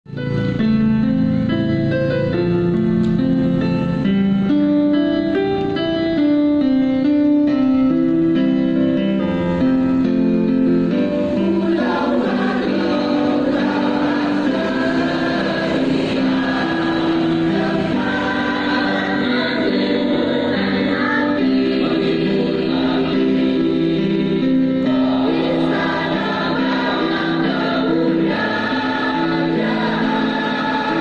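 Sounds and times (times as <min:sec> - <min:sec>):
keyboard accompaniment: 0:00.0 - 0:31.0
children's choir singing: 0:11.2 - 0:31.0.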